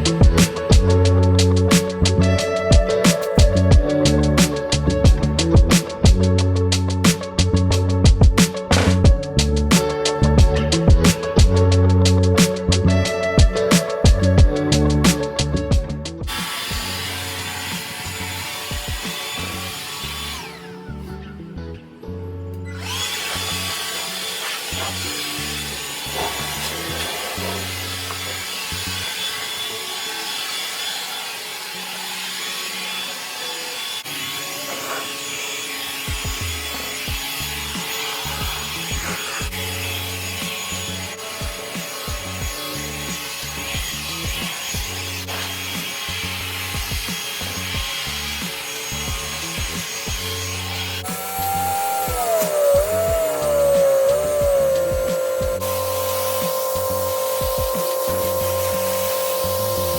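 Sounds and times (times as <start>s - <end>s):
background music: 0.0s - 59.9s
pressure washer spraying hiss: 16.3s - 20.2s, 23.1s - 28.4s, 51.0s - 59.9s.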